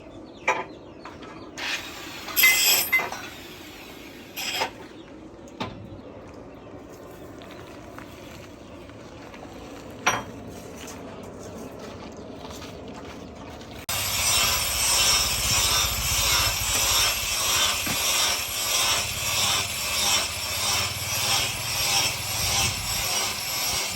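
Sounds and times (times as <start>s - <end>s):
steel clinking on steel: 2.3s - 3.4s.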